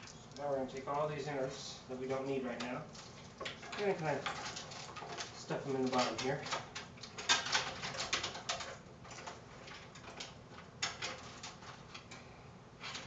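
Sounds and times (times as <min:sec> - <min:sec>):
cables rustling and clicking in case: 0:02.6 - 0:12.2.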